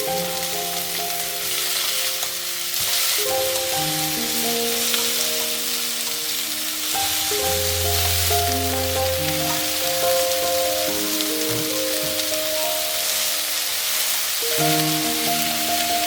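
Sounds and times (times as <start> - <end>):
food sizzling in a pan: 0.0 - 16.0
gentle background music: 0.0 - 16.0.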